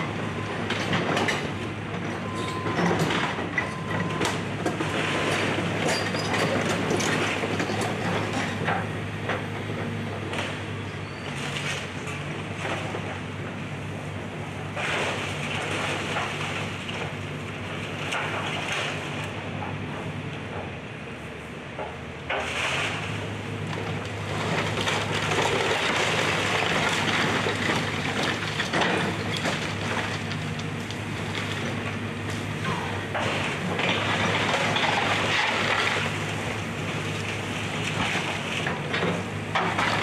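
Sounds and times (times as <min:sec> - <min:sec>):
excavator engine running: 0:00.0 - 0:40.0
wood and debris crashing: 0:24.3 - 0:32.0, 0:33.0 - 0:39.0, 0:39.6 - 0:40.0.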